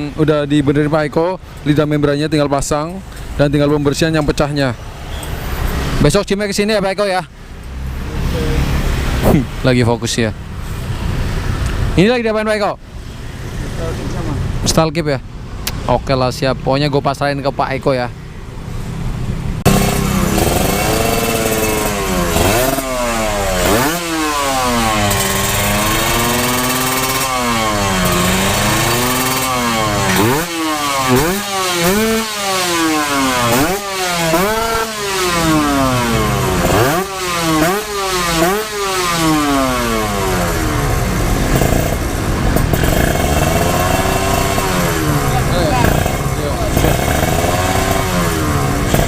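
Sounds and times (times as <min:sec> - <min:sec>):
two-stroke motorcycle engine revving: 0:19.0 - 0:49.0.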